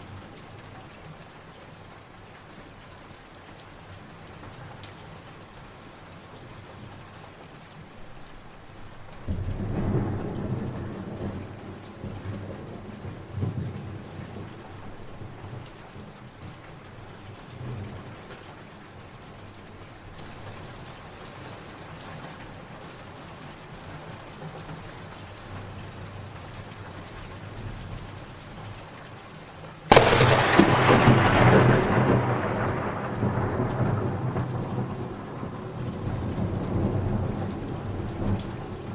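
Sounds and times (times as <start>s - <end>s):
steady rain falling: 0.0s - 38.9s
loud thunderclap: 9.3s - 13.7s, 29.9s - 37.3s
thunder rumbling: 9.3s - 15.6s, 29.9s - 38.9s.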